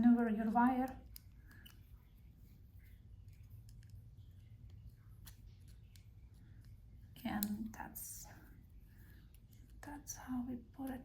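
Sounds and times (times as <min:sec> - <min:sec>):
faint wire clicks: 0:03.2 - 0:07.8.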